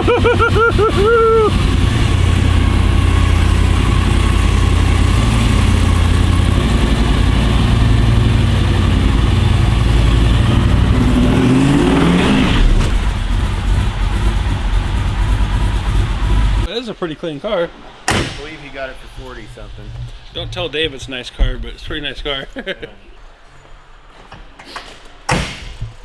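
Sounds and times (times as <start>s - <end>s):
car engine running and revving: 0.0s - 16.7s.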